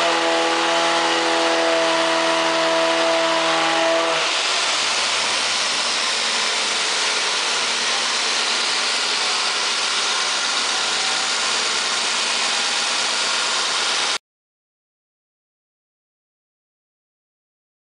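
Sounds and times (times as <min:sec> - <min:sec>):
loud steady rushing noise: 0:02.8 - 0:14.2
car engine idling: 0:04.2 - 0:14.2.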